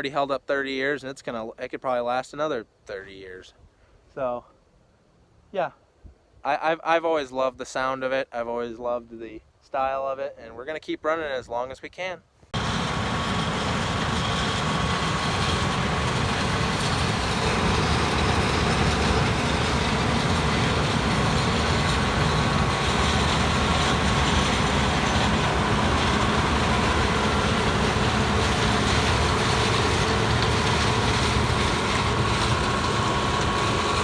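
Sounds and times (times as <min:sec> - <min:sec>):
combine harvester drone: 0:12.6 - 0:34.0.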